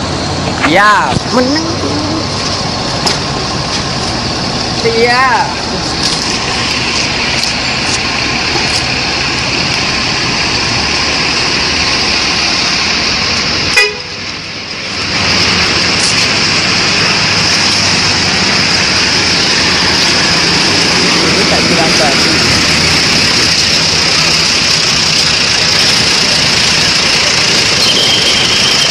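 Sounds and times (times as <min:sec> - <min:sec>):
road traffic noise: 0:00.0 - 0:28.9
vehicle horns: 0:13.7 - 0:14.2, 0:27.6 - 0:28.9.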